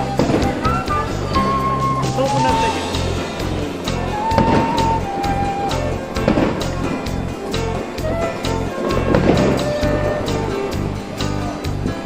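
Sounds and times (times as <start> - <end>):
music with steady beat and bass: 0.0 - 12.0.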